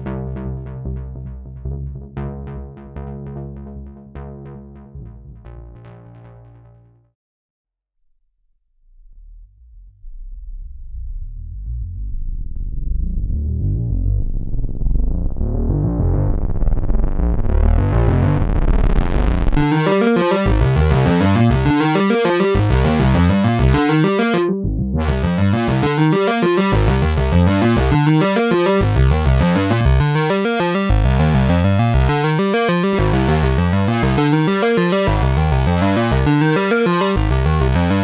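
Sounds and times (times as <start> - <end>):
pulsing synth bass: 0.0 - 7.1, 9.0 - 38.0
synthesizer sequenced pattern: 19.6 - 38.0.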